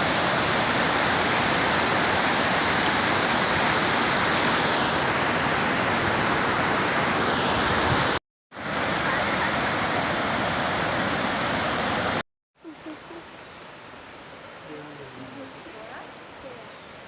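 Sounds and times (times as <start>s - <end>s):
waterfall rushing: 0.0s - 12.2s.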